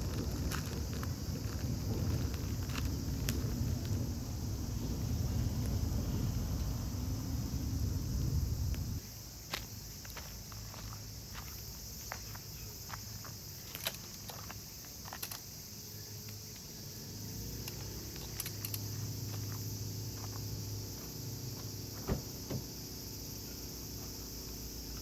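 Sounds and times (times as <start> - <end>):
low hum: 0.0 - 9.0
insects droning: 0.0 - 25.0.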